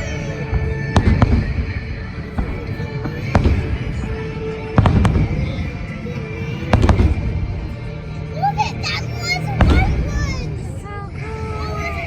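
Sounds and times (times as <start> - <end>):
fireworks bangs: 0.0 - 7.8, 9.6 - 10.6
low booming rumble of fireworks: 0.0 - 8.2, 9.6 - 10.7
music playing: 0.0 - 12.0.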